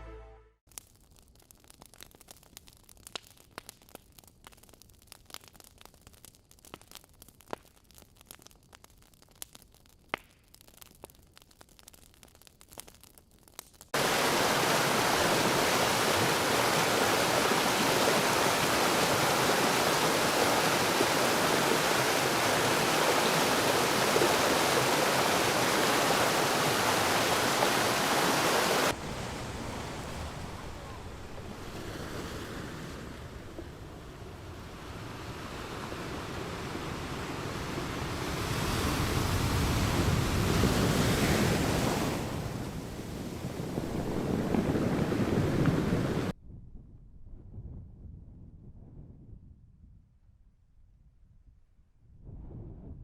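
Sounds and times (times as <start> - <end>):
faint crackles and clicks: 0.7 - 14.0.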